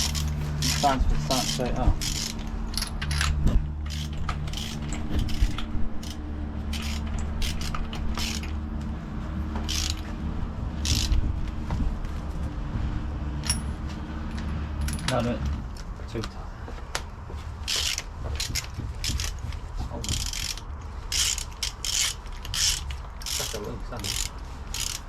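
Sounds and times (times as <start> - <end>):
mechanical clicking and ratcheting: 0.0 - 8.7, 9.6 - 10.1, 10.8 - 11.3, 17.6 - 25.0
steady low drone: 0.0 - 25.0.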